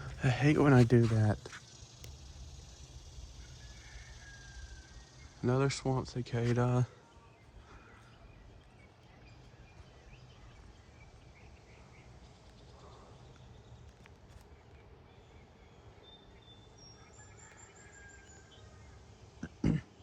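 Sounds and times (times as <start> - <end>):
distant birds chirping: 0.0 - 20.0
low background hiss: 0.0 - 20.0.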